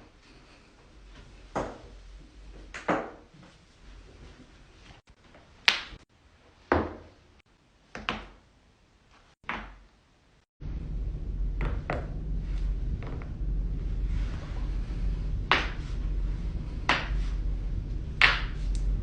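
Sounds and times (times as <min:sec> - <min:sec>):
steady low hum: 0:10.6 - 0:19.0.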